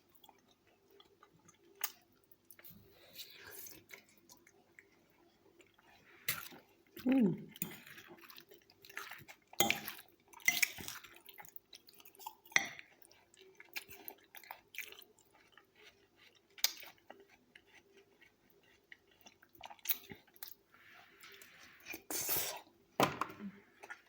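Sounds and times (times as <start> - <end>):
person chewing wet food: 0.0 - 22.8, 23.4 - 24.0.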